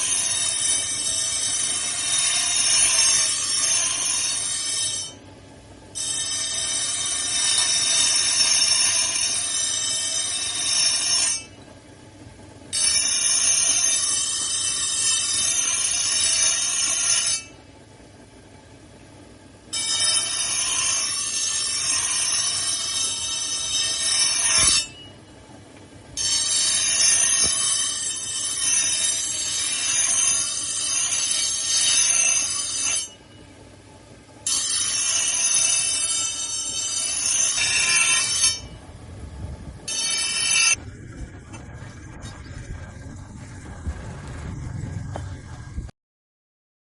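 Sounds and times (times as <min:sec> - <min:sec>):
power grinder grinding steel: 0:00.0 - 0:05.2, 0:06.0 - 0:11.5, 0:12.8 - 0:17.5, 0:19.8 - 0:25.1, 0:26.2 - 0:33.2, 0:34.4 - 0:38.8, 0:39.9 - 0:40.8.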